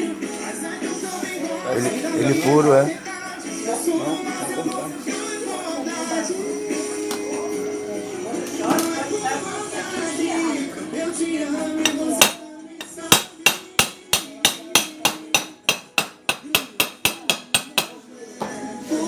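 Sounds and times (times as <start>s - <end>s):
background music: 0.0s - 19.0s
hammer blows: 11.9s - 18.0s.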